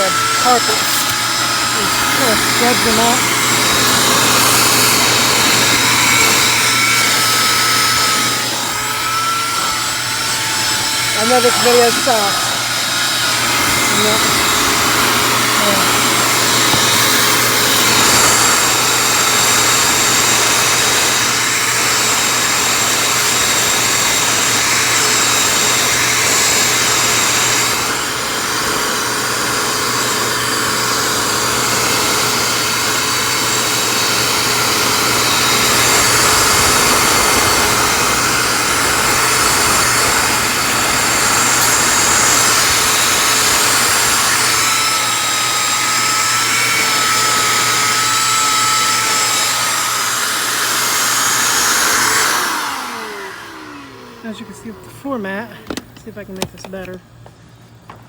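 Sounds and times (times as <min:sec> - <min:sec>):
vacuum cleaner motor whine: 0:00.0 - 0:58.0.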